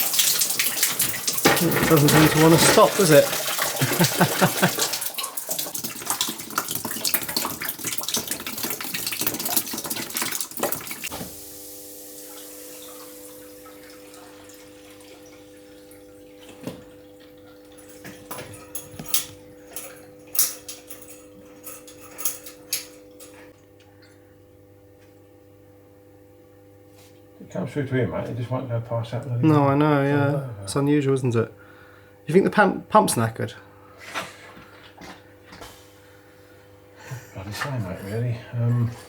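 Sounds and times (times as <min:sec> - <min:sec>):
water pouring into bucket: 0:00.0 - 0:16.8
faint steady hum: 0:27.6 - 0:39.0.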